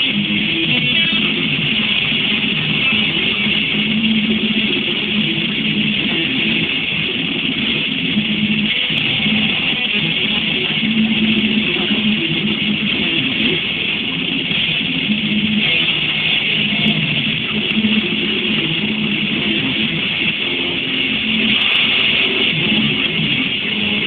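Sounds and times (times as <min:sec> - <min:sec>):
technical death metal instrumental: 0:00.0 - 0:24.0.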